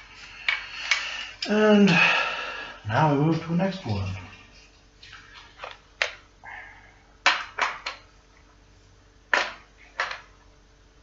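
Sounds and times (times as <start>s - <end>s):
tools knocking and clattering: 9.3s - 10.4s.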